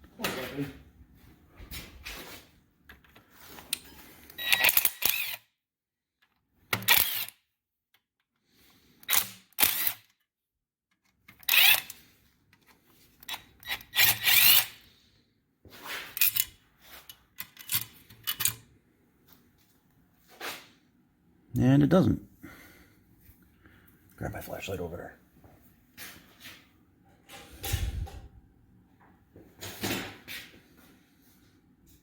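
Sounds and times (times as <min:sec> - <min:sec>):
clicking and mechanical tool noise: 0:02.9 - 0:05.4, 0:06.2 - 0:08.4, 0:10.9 - 0:14.8, 0:16.0 - 0:18.7.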